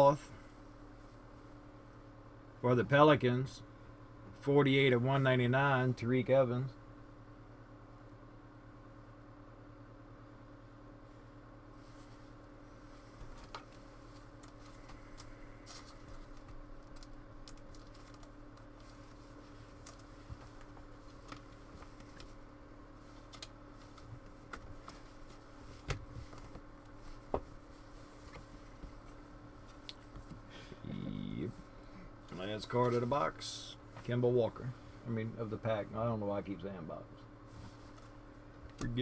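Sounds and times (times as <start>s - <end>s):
low steady hum: 0.0s - 39.0s
trading cards clicking and rustling: 14.4s - 19.0s.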